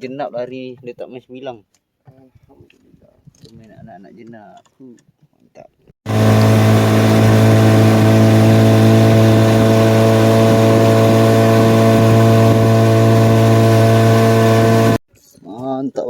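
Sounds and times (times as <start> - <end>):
boat engine running: 6.1 - 15.0.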